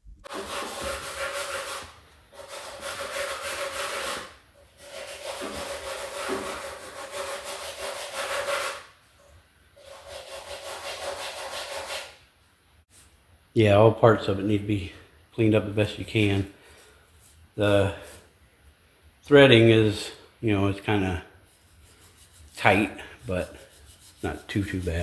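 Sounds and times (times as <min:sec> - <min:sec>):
wire brush scrubbing metal: 0:21.5 - 0:25.0.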